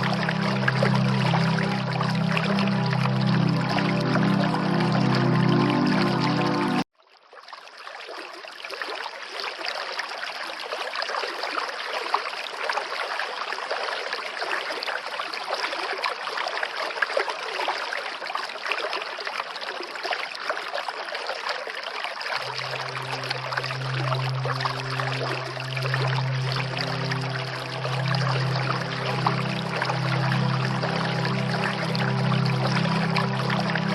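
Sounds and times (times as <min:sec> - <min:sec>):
low sustained music tones: 0:00.0 - 0:06.8, 0:22.4 - 0:33.9
running water rushing: 0:00.0 - 0:06.8, 0:18.5 - 0:33.9.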